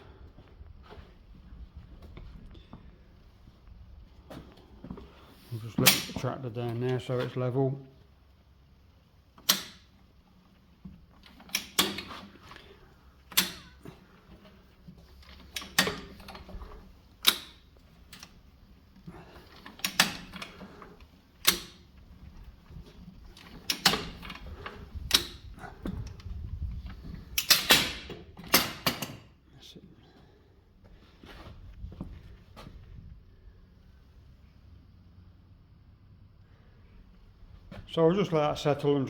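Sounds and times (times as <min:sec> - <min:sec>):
jack clicking as lowered: 0:09.4 - 0:09.9, 0:11.2 - 0:12.7, 0:13.3 - 0:13.9, 0:15.2 - 0:18.4, 0:19.3 - 0:21.9, 0:23.3 - 0:26.2, 0:27.3 - 0:29.2.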